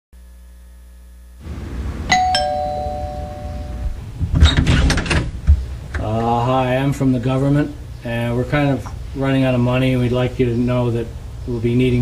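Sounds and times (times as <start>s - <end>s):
two-tone doorbell chime: 2.1s - 4.0s.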